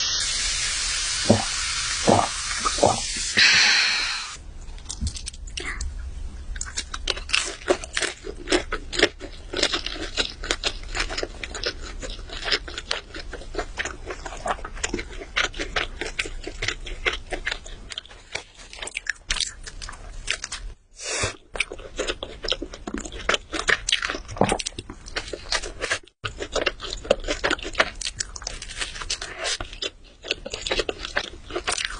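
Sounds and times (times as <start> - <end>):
crunchy chewing of food: 4.8 - 31.9.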